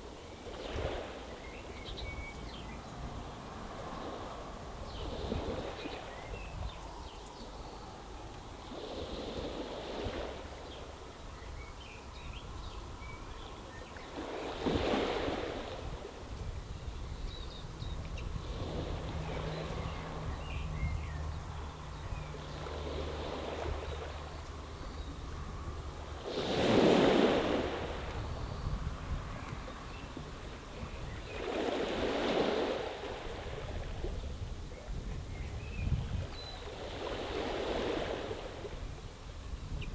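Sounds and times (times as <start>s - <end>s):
waves washing over stony beach: 2.8s - 6.2s, 8.5s - 11.0s, 14.0s - 16.4s, 18.4s - 20.3s, 21.7s - 24.7s, 25.6s - 34.5s, 36.6s - 39.1s.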